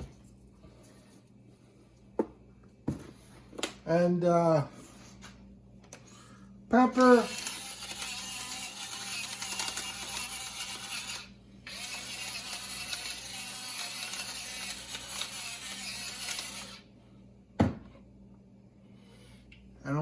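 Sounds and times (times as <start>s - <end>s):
pepper mill grinding: 7.0s - 16.8s.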